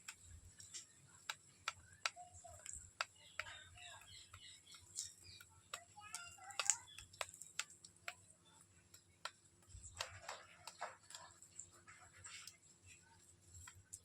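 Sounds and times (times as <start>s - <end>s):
faint clicks and taps: 0.0s - 14.0s.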